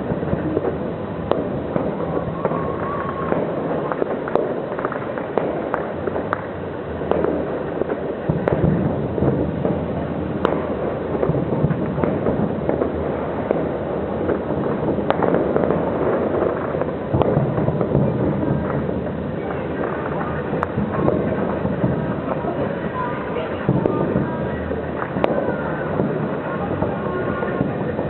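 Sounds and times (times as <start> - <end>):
fireworks booming and cracking: 0.0 - 28.0.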